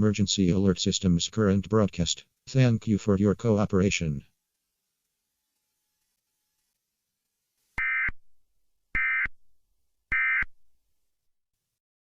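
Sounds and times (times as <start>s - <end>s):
data tone bursts: 7.8s - 8.2s, 9.0s - 9.3s, 10.1s - 10.5s.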